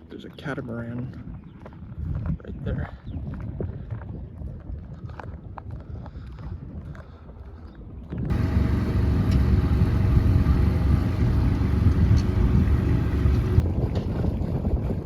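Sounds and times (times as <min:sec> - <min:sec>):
wind and water rumble: 0:00.0 - 0:15.0
boat engine running: 0:08.3 - 0:14.6.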